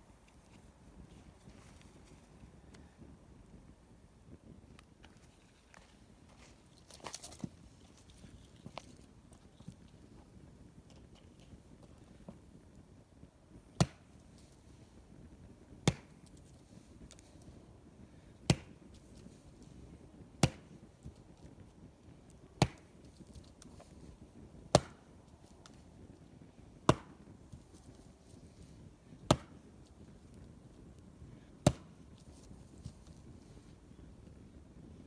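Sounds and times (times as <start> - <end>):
axe chopping wood: 13.8 - 14.1, 15.8 - 16.3, 18.5 - 19.0, 20.4 - 20.8, 22.6 - 23.9, 24.7 - 25.8, 26.8 - 27.9, 29.3 - 29.6, 31.6 - 32.0.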